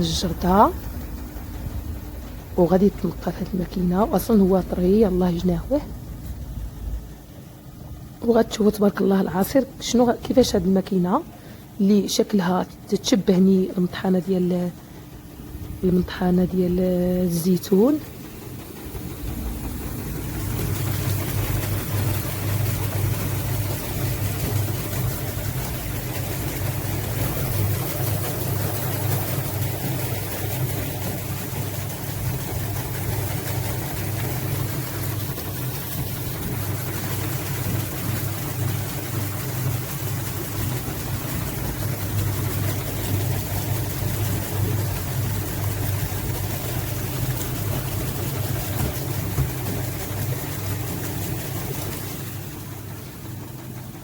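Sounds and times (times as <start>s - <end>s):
machinery humming: 0.0s - 54.0s.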